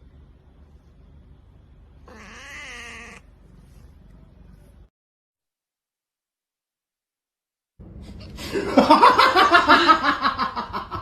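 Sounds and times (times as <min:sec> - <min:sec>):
low steady hum: 0:00.0 - 0:04.9
cat meowing: 0:02.0 - 0:03.3.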